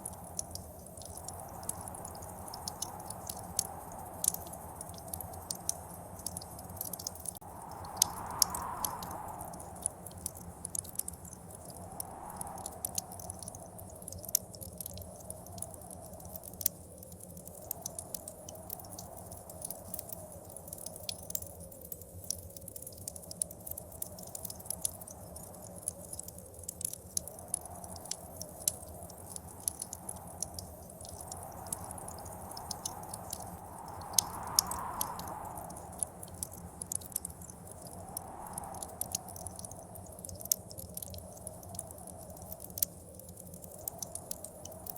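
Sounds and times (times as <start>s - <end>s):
gusting blizzard wind: 0.0s - 14.0s, 27.3s - 40.5s
wood fire crackling and popping: 0.0s - 44.9s.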